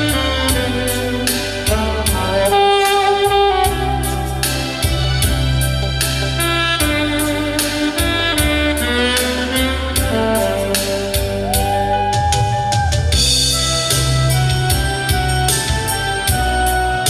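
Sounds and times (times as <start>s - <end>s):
bass: 0.0s - 17.0s
saxophone ballad melody: 0.0s - 17.0s
drum beat: 11.5s - 13.7s.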